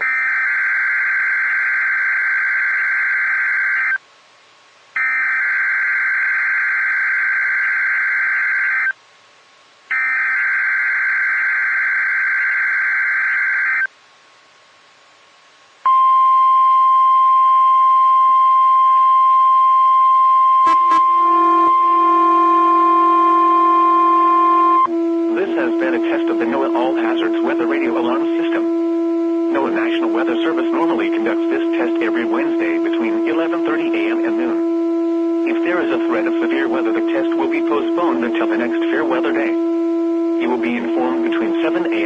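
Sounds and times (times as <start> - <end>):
steady warning alarm tone: 9.9 - 13.9, 15.9 - 42.0
buzzing warble of data tones: 20.6 - 24.9.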